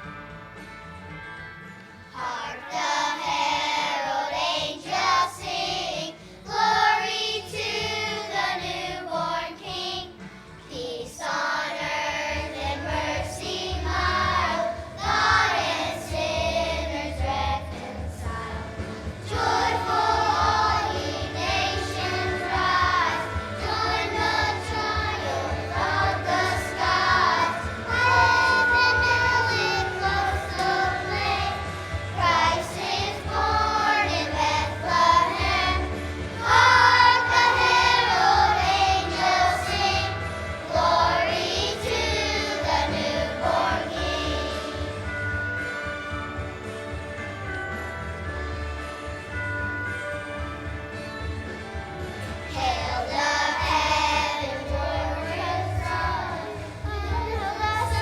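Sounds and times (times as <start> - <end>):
musical accompaniment: 0.0 - 58.0
children's choir singing: 2.1 - 46.0, 51.6 - 58.0.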